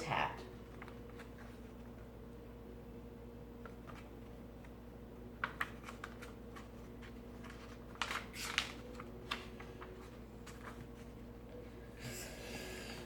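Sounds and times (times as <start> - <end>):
page rustling: 0.6 - 2.0, 5.4 - 11.4.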